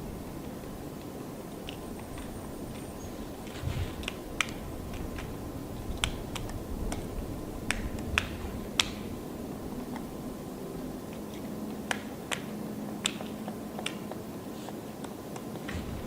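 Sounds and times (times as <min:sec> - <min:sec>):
woodpecker tapping bark: 0:05.9 - 0:09.1, 0:11.1 - 0:15.5.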